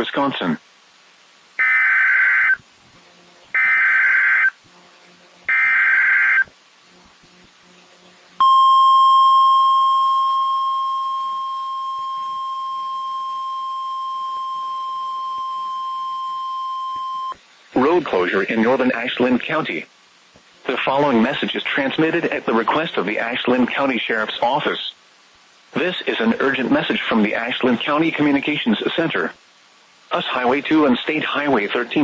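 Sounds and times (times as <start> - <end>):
digital header data bursts: 1.6 - 2.6, 3.5 - 4.6, 5.5 - 6.5.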